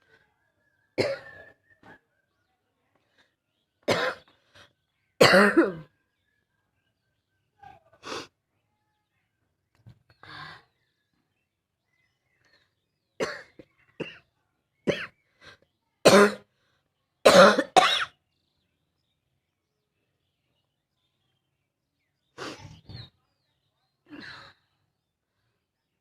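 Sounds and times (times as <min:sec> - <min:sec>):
woman coughing: 0:01.0 - 0:01.3, 0:03.9 - 0:04.2, 0:05.2 - 0:05.9, 0:13.2 - 0:14.2, 0:16.1 - 0:16.4, 0:17.3 - 0:18.1.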